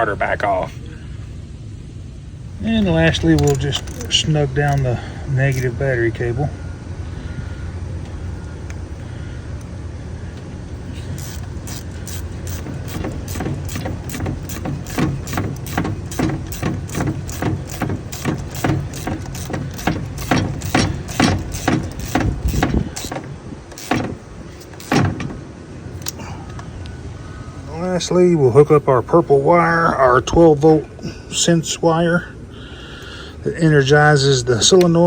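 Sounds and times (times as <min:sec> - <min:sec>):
steady low hum: 0:00.0 - 0:35.0
ratchet wrench clicking: 0:03.1 - 0:04.9, 0:05.5 - 0:05.7, 0:11.1 - 0:25.4.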